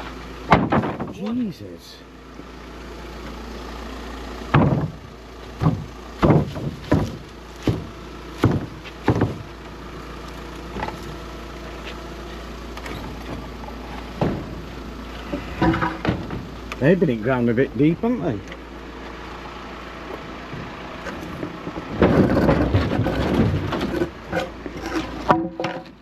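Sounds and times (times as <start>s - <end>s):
vehicle engine idling: 0.0s - 26.0s
heavy clunks of objects handled: 0.5s - 1.4s, 4.5s - 9.5s, 12.8s - 16.8s, 20.6s - 26.0s.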